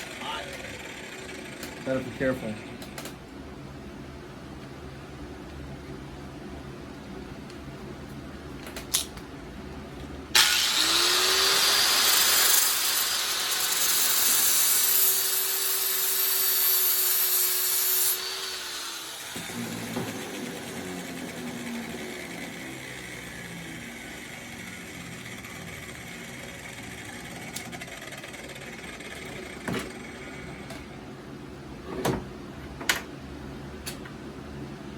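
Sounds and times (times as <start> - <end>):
motor winding down: 0.0 - 2.1, 10.4 - 30.8
power tool cutting metal: 10.4 - 30.6.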